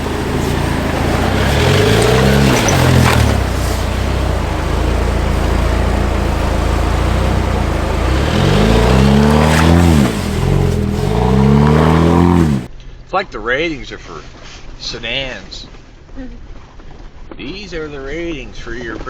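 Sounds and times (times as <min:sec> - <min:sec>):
engine revving: 0:00.0 - 0:12.7
road and wind noise: 0:00.0 - 0:12.8.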